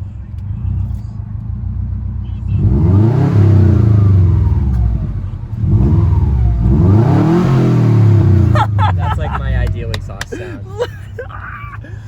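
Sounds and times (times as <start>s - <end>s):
car engine revving: 1.6s - 10.4s.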